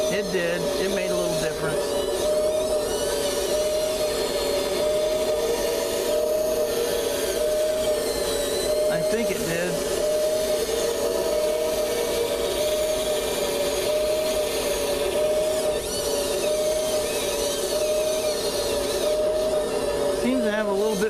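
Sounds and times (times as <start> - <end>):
toy excavator motors whining: 0.0 - 21.0.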